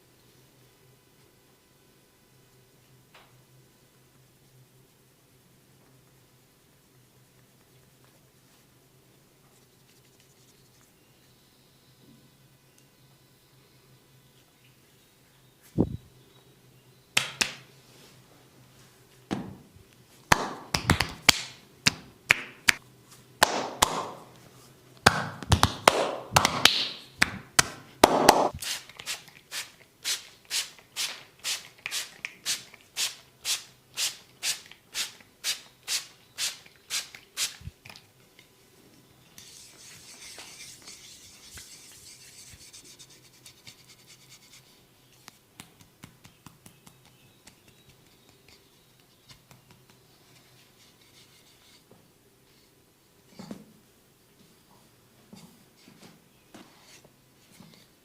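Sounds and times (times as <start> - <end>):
soft rubbing on skin: 9.5 - 11.0, 39.3 - 51.9
massage slaps and taps: 17.2 - 17.6, 20.3 - 22.8, 25.0 - 28.6, 45.5 - 48.4.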